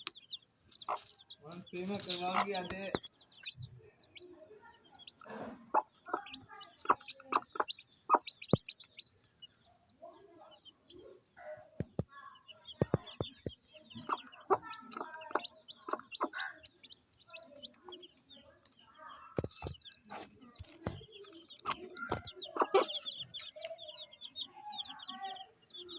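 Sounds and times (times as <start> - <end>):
chicks peeping: 0.0 - 25.9
hen clucking: 0.0 - 25.9
sharp taps: 11.8 - 12.1, 12.8 - 14.2, 19.4 - 22.6.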